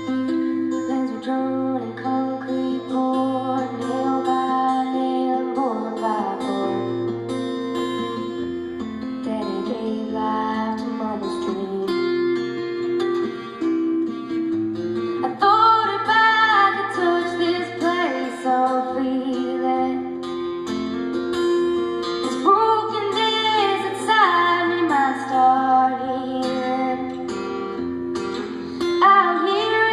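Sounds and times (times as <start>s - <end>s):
acoustic guitar: 0.0s - 29.9s
woman singing: 0.0s - 29.9s.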